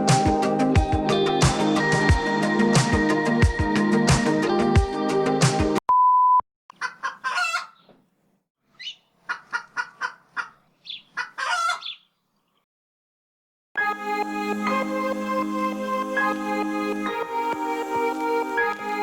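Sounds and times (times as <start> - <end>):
backing music: 0.0 - 5.8
chicken clucking: 6.8 - 8.0, 8.8 - 12.0.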